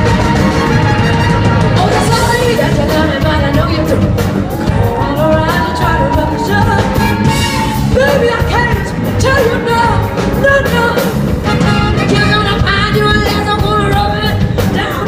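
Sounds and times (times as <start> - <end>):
person singing: 0.0 - 11.3
live band playing: 0.0 - 15.0.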